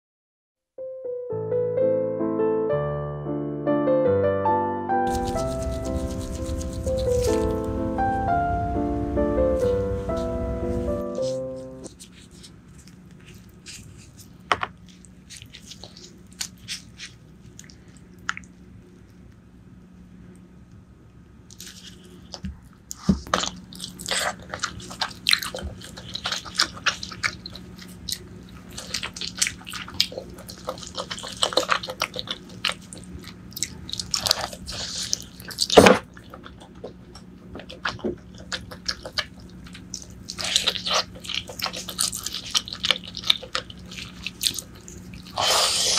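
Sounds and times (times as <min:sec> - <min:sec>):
wet chewing and mouth clicks: 0:05.1 - 0:07.7, 0:11.1 - 0:19.4, 0:21.5 - 0:45.9.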